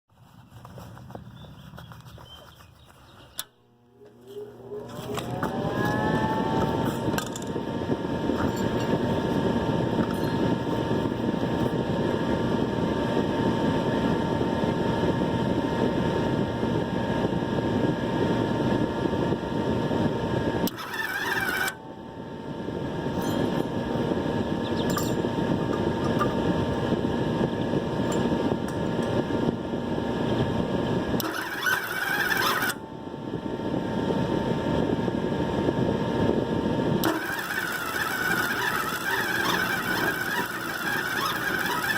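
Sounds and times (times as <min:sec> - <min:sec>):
faint high whine: 0:00.2 - 0:11.7.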